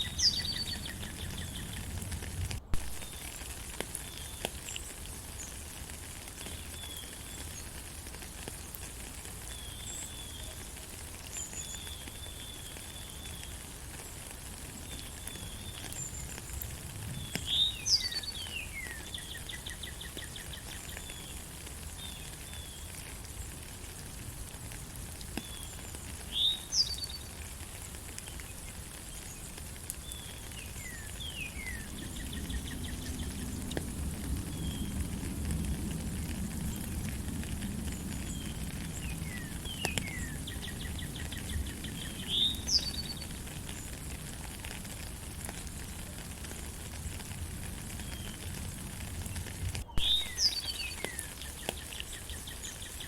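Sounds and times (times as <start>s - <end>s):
rain pattering: 0.0s - 53.0s
bird chirps and whistles: 49.9s - 51.1s.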